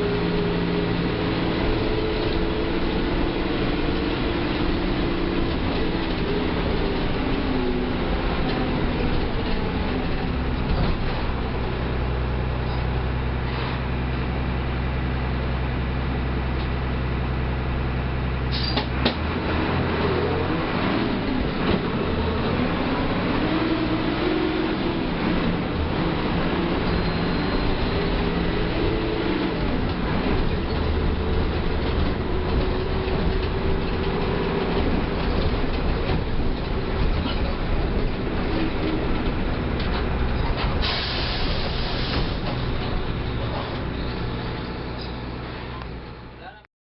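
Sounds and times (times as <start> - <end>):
diesel bus engine droning: 0.0 - 46.7
road and body rumble: 0.0 - 46.7
hiss: 40.8 - 42.5.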